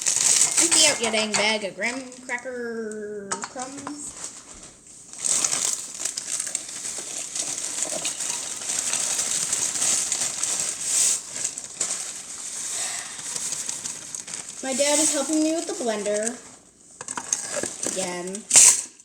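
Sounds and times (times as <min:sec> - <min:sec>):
bag crinkling: 0:00.0 - 0:02.9, 0:03.5 - 0:19.0.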